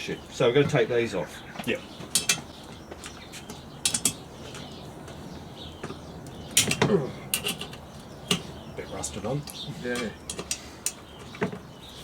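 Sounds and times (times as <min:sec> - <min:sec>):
hand tools clinking on metal: 0:02.1 - 0:03.2, 0:03.8 - 0:04.7, 0:06.6 - 0:08.5, 0:09.4 - 0:11.0.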